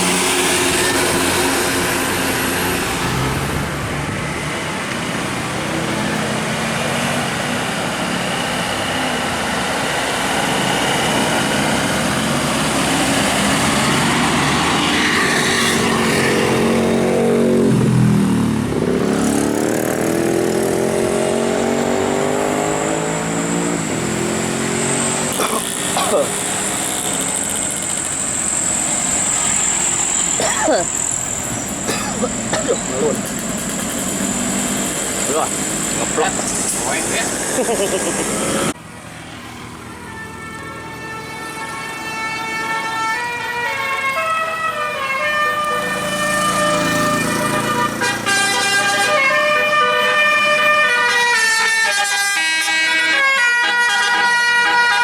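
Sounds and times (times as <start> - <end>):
engine accelerating away: 0.0 - 38.8, 45.2 - 48.3
large vehicles passing: 0.0 - 55.0.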